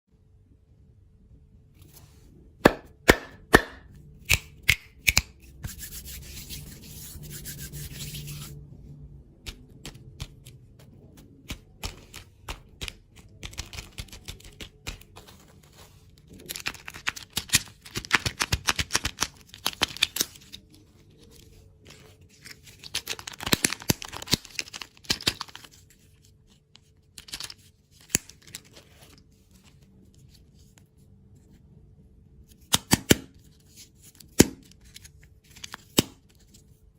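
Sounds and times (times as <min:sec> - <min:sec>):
plastic wrappers crinkling and tearing: 0:16.2 - 0:25.8.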